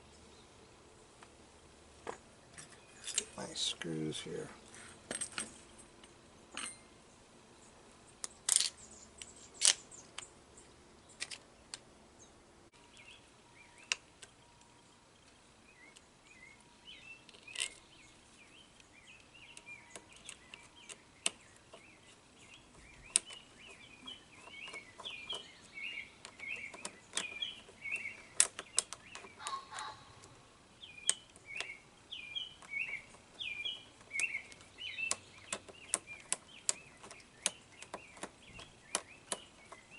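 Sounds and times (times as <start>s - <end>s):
birds chirping: 0.0s - 39.9s
metal clicks of small screws: 8.2s - 10.3s, 11.2s - 11.8s, 17.3s - 17.9s, 26.2s - 30.3s, 34.0s - 39.9s.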